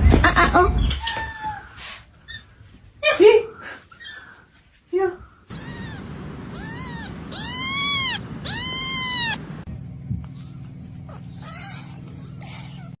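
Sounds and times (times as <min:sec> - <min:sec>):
faint steady hum: 0:05.2 - 0:12.9
kitten meowing: 0:05.5 - 0:09.7, 0:11.4 - 0:12.0.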